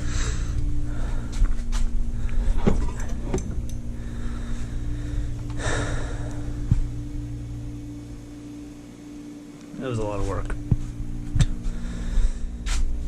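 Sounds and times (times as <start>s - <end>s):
man breathing hard: 0.0s - 2.8s, 3.8s - 6.9s, 11.6s - 12.8s
steady background hum: 0.0s - 13.0s.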